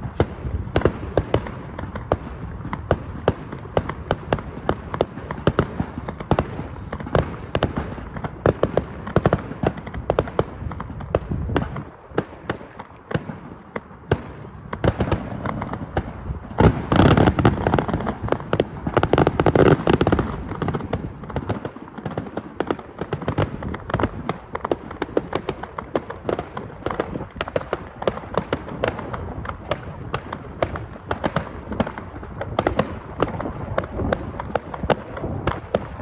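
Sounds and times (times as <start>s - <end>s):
fireworks bangs and crackling: 0.0s - 36.0s.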